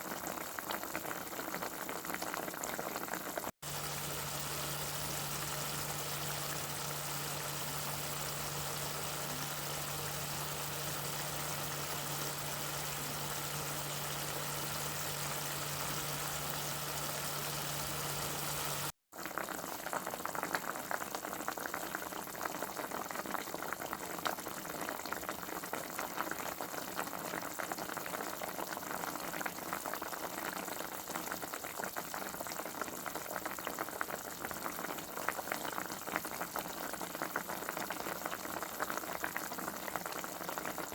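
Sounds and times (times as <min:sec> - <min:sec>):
liquid boiling in a pot: 0:00.0 - 0:40.9
low steady hum: 0:03.6 - 0:18.9.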